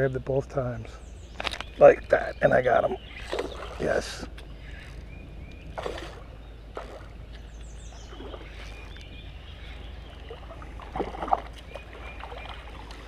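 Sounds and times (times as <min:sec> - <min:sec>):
birds chirping: 0:00.0 - 0:13.0
fish splashing in water: 0:03.1 - 0:03.9, 0:05.7 - 0:07.2, 0:10.0 - 0:13.0.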